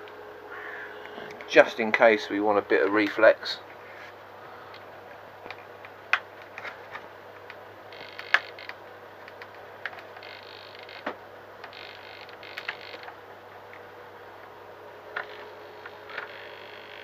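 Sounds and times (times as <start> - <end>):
screws creaking into plastic: 7.9 - 8.8, 10.2 - 13.1, 15.2 - 15.5, 16.1 - 17.0.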